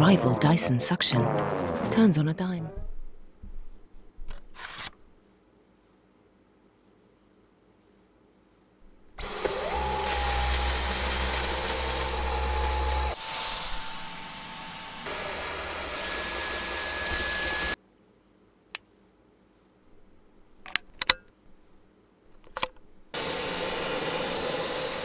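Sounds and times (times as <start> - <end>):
vacuum cleaner motor whining: 9.1 - 17.8, 23.0 - 25.0.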